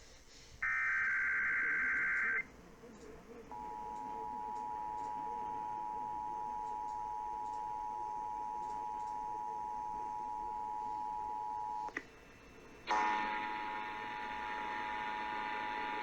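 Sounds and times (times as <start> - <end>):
click: 6.6 - 7.7, 8.6 - 9.2, 11.8 - 12.1.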